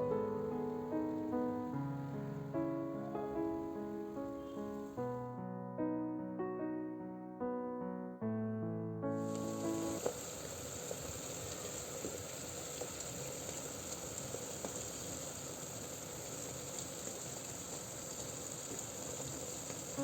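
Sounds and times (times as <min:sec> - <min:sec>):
steady hiss with crackles: 0:00.0 - 0:05.3, 0:09.1 - 0:20.0
piano melody: 0:00.0 - 0:10.1.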